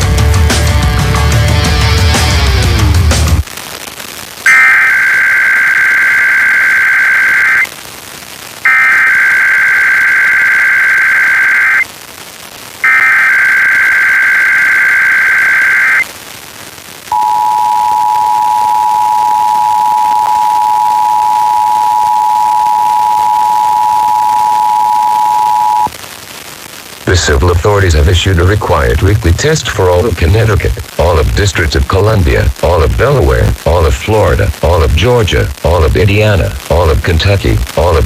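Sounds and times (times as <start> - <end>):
buzzy digital data tones: 4.5 - 7.7, 8.7 - 11.8, 12.8 - 16.1
two-tone attention signal: 17.2 - 25.9.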